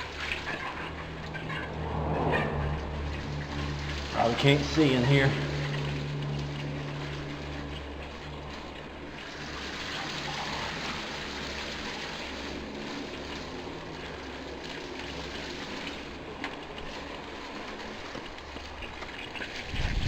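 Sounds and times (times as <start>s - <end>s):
bike tyres rolling on dirt: 11.0s - 20.0s
wind on microphone: 19.6s - 20.0s.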